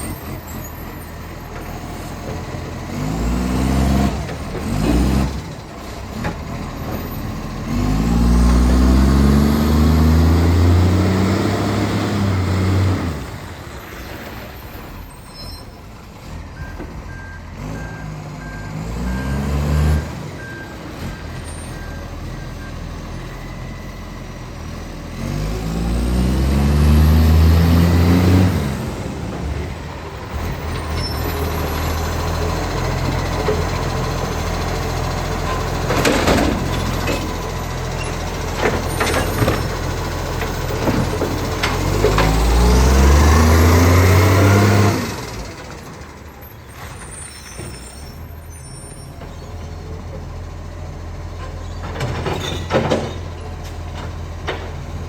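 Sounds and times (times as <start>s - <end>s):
diesel truck engine revving: 0.0s - 15.4s, 16.0s - 55.0s
reversing beeper: 16.6s - 24.6s.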